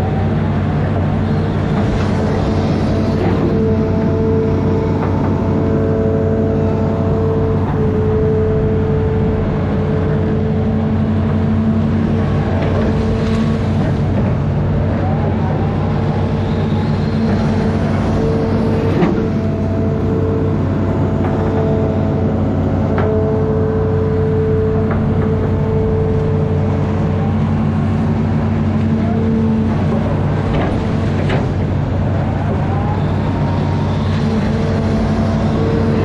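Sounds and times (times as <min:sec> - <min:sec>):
excavator diesel engine running: 0:00.0 - 0:36.0
high whine: 0:00.0 - 0:36.0.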